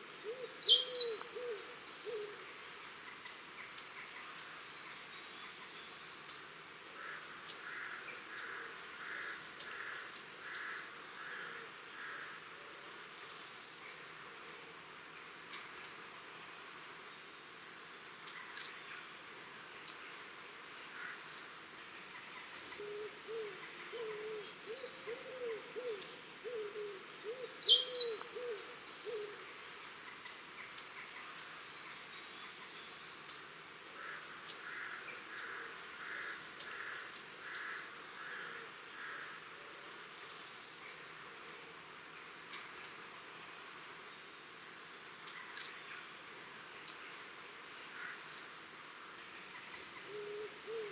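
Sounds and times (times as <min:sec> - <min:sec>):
bird hooting notes: 0:50.0 - 0:50.9.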